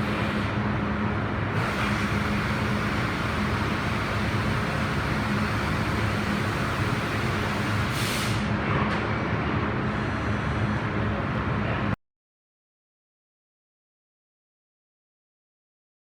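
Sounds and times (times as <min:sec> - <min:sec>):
laser cutting machine running: 0:00.0 - 0:00.7, 0:01.5 - 0:08.0
air hiss burst: 0:07.6 - 0:08.5.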